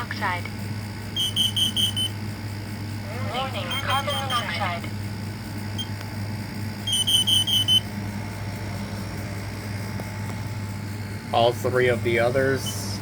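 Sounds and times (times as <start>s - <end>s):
high-pitched alarm beeps: 1.1s - 2.2s, 3.6s - 4.5s, 5.8s - 6.0s, 6.8s - 7.9s, 12.6s - 13.0s.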